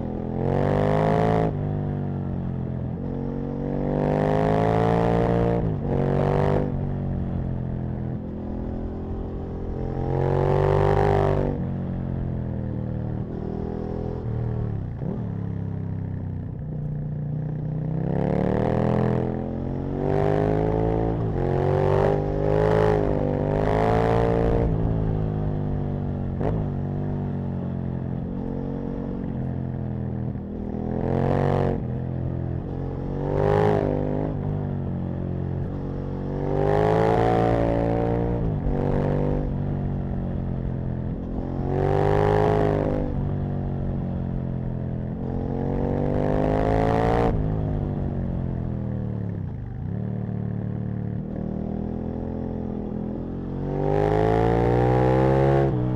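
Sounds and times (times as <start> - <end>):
motorcycle engine revving: 17.8 - 55.9.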